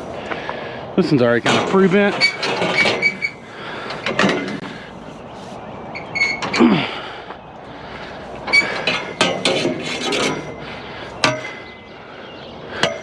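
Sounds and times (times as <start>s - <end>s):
metal poles clanking: 1.2s - 5.2s, 5.9s - 7.1s, 8.1s - 11.9s, 12.7s - 13.0s.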